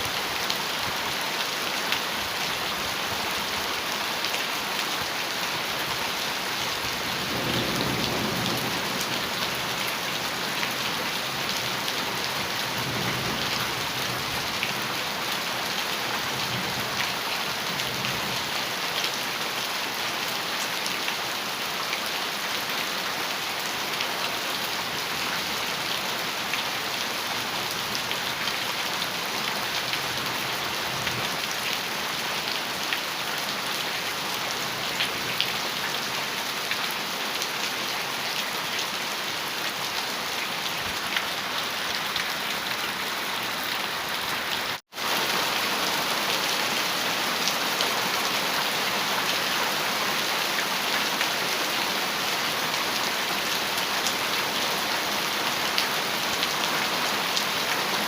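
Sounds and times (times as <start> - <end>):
heavy rain on a metal roof: 0.0 - 58.0
distant thunder rumbling: 7.1 - 9.4.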